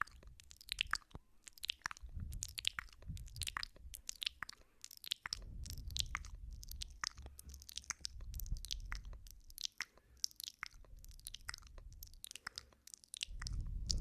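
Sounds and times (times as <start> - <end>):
wet mouth clicks and kisses: 0.0 - 14.0
low rumble: 2.0 - 4.0, 5.4 - 7.4, 8.0 - 9.5, 13.3 - 14.0.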